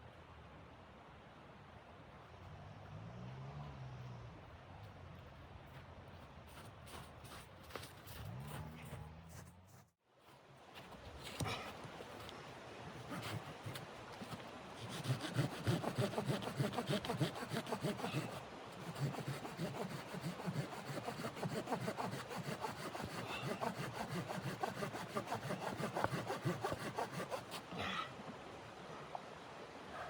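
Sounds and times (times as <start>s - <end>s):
hand saw cutting wood: 13.0s - 27.7s.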